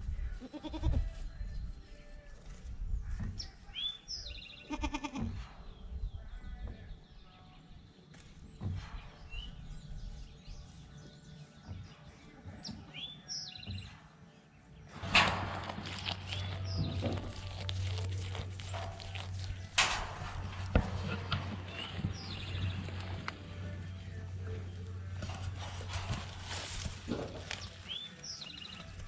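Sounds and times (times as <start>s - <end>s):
goat kid bleating: 0.3s - 1.1s, 4.6s - 5.4s
small birds chirping: 1.3s - 29.0s
steady low hum: 15.0s - 28.1s.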